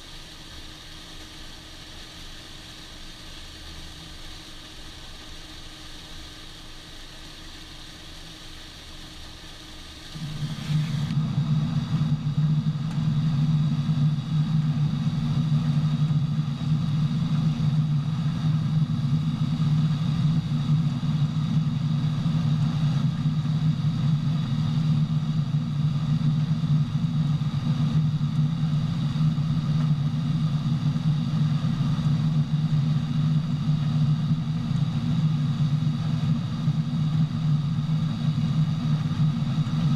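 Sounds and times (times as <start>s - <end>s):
farm machine engine droning: 9.9s - 36.5s.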